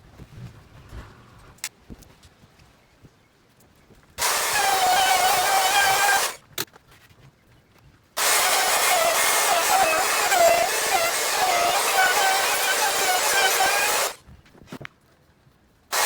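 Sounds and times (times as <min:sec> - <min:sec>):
electric power tool whining: 0:04.2 - 0:06.4, 0:08.2 - 0:14.2.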